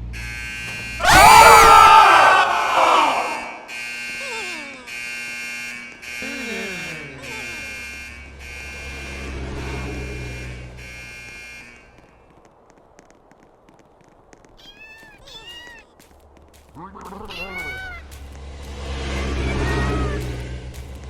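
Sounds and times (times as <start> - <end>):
fire alarm beeping: 0.1 - 1.1, 3.6 - 9.4
falling cries: 1.0 - 5.0.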